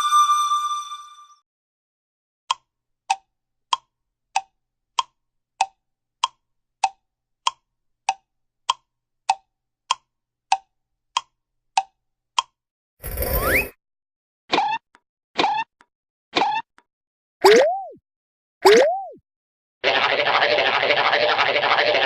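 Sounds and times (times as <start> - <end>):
hollow cartoon pops: 17.4 - 18.0, 18.6 - 19.2.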